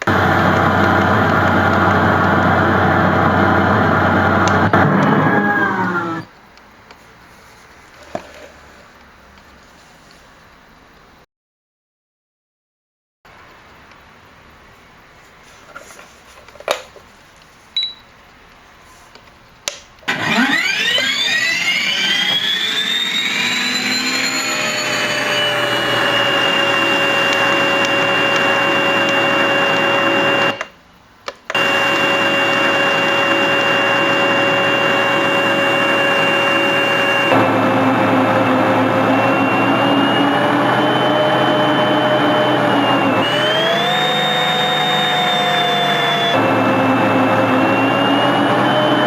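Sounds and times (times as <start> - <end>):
simulated turbine whine: 0.1 - 6.3, 20.2 - 30.6
clicks: 4.4 - 7.0, 19.1 - 20.2, 26.1 - 31.7
short beep: 17.8 - 18.1.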